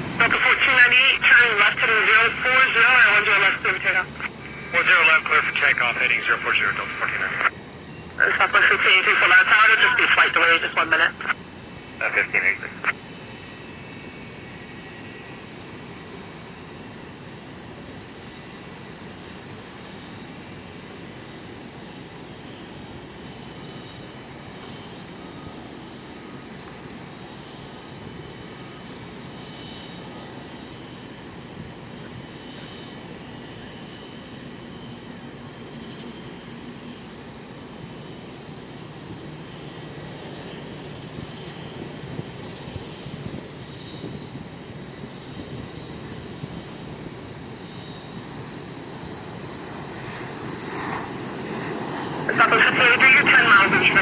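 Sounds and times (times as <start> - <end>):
jet engines roaring at takeoff: 0.0 - 54.0.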